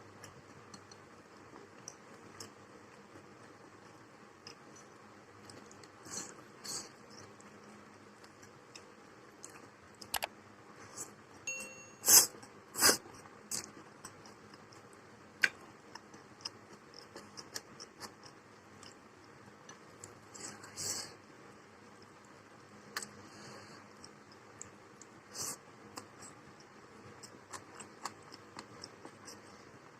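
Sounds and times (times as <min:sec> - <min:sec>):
person chewing and crunching: 0:12.8 - 0:20.2, 0:23.9 - 0:29.8.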